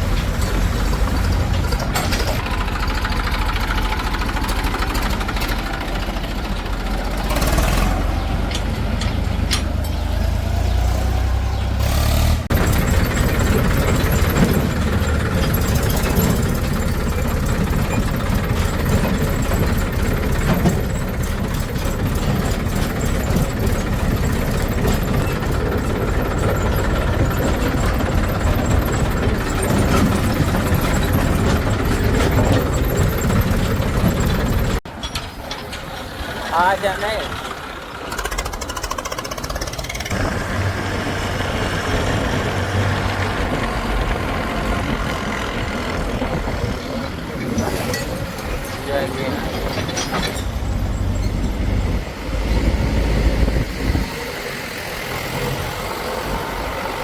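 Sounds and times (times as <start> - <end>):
diesel engines rumbling: 0.0 - 57.0.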